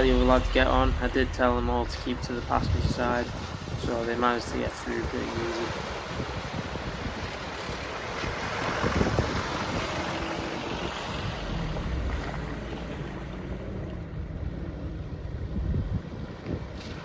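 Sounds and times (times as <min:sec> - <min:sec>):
vehicle engine running: 0:00.0 - 0:03.6, 0:09.8 - 0:16.5
water rushing and splashing: 0:00.0 - 0:17.0
wind on microphone: 0:00.0 - 0:17.0.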